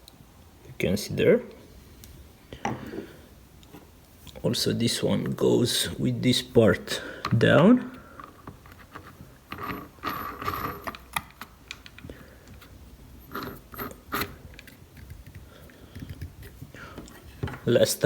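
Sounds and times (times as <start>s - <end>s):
metal clicks and rattles: 8.2s - 12.7s.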